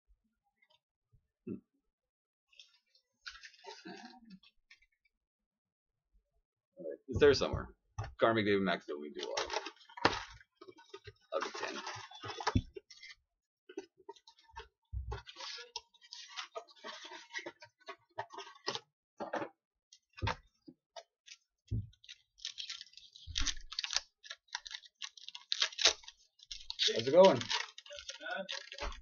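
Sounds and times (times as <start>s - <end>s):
card wrappers crinkling: 9.2s - 13.1s, 15.2s - 17.5s, 22.0s - 29.0s.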